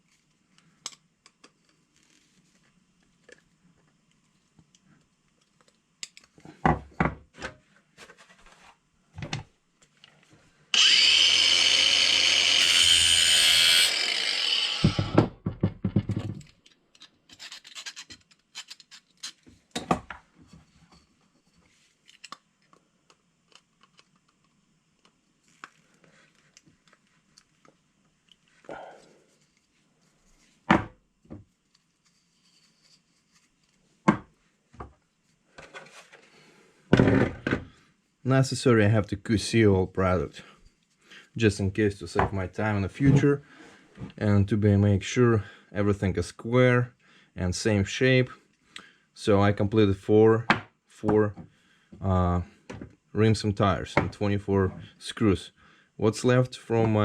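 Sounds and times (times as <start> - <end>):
small power tool whine: 10.7 - 15.4
clicks and scraping of small tools: 16.3 - 28.5.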